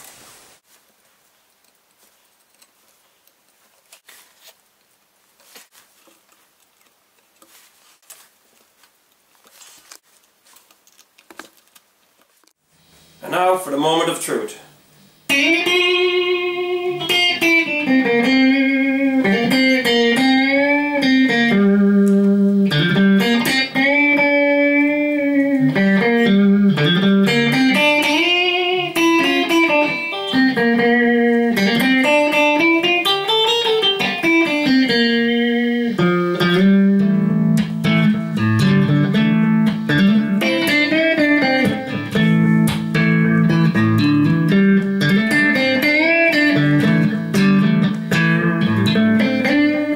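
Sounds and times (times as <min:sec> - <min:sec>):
electric guitar chords: 0:15.3 - 0:49.9
electric guitar lead line: 0:15.3 - 0:49.9.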